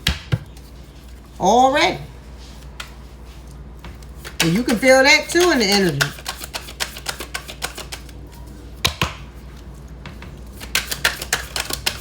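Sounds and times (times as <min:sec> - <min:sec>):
cards being shuffled: 0:05.4 - 0:08.3, 0:10.6 - 0:12.0.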